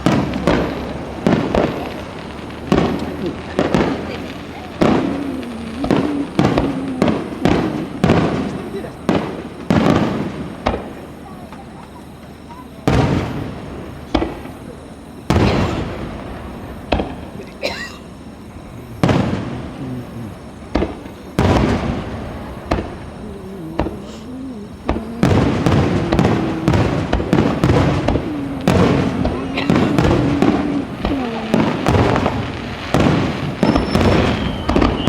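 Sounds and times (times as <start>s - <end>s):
fireworks booming with rumbling echo: 0.0s - 35.0s
fireworks cracking: 0.0s - 35.0s.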